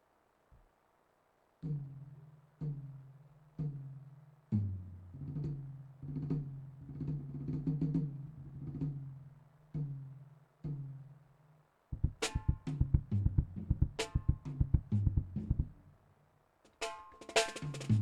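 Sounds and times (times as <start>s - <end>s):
low-pitched drum hits: 12.0s - 15.7s.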